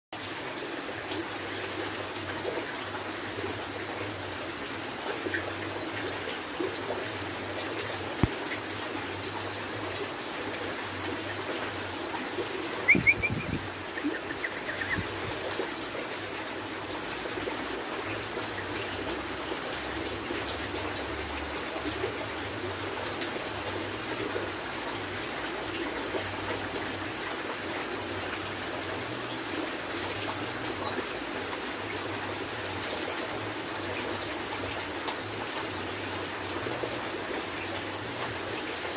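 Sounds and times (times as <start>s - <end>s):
steady rush of water: 0.2s - 38.9s
bird chirps: 12.8s - 15.1s.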